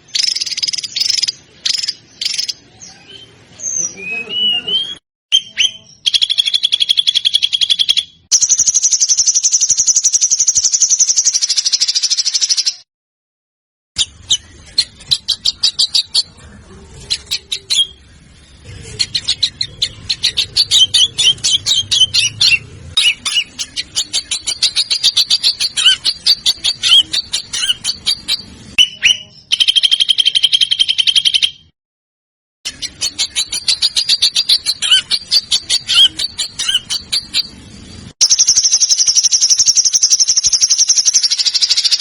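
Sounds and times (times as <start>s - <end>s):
songbird trill: 0.0s - 12.8s, 17.1s - 31.7s, 32.7s - 37.6s, 38.2s - 42.0s
songbird chattering notes: 18.6s - 31.4s, 32.7s - 37.6s.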